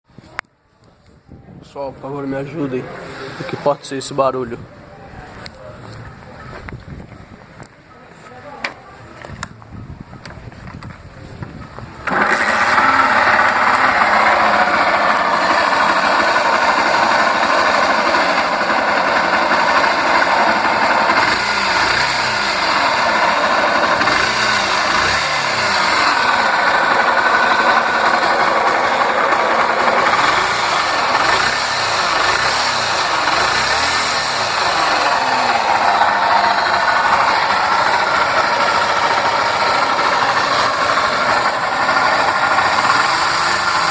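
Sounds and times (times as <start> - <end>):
abnormal mechanical engine noise: 2.2 - 43.9
motorcycle engine starting and revving: 2.4 - 4.7, 9.0 - 43.9.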